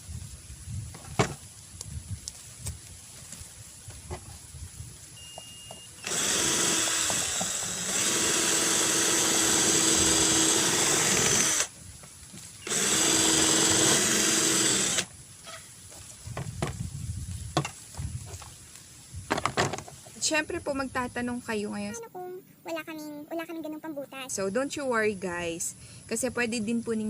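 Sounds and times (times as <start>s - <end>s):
electric drill boring into plastic: 6.0s - 11.7s, 12.6s - 15.1s.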